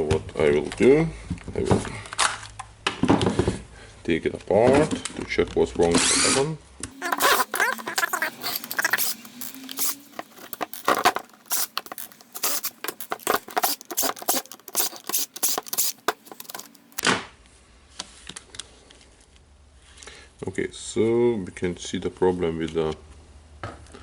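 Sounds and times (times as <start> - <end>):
plastic parts clicking and rattling: 7.0 - 17.0.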